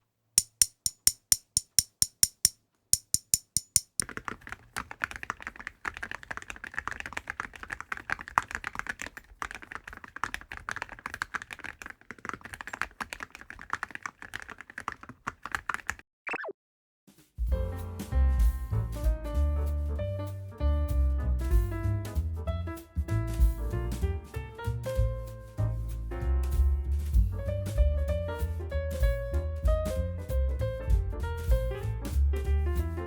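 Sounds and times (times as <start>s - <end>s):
mechanical keyboard typing: 3.3s - 16.0s.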